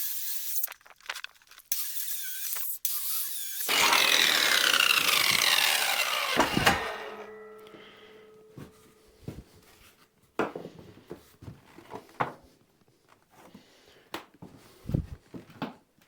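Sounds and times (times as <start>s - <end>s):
wood and tools knocking: 3.7s - 8.7s
heavy thump: 6.3s - 8.7s.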